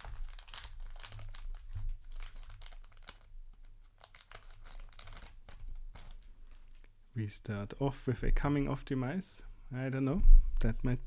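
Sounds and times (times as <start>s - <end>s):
foil wrapper crinkling and tearing: 0.0s - 6.9s.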